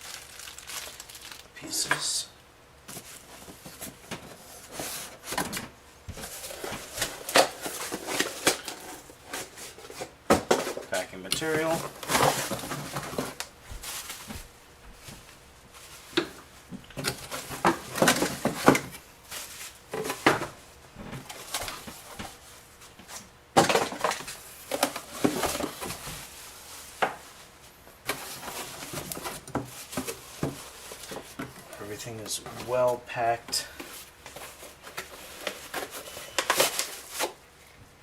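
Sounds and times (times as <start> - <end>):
packing material rustling: 0.0 - 1.8, 10.9 - 14.5, 33.8 - 37.4.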